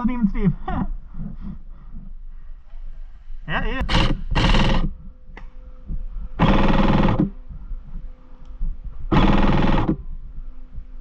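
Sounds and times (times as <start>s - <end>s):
airsoft gun full-auto bursts: 3.8s - 4.9s, 6.4s - 7.3s, 9.1s - 10.0s.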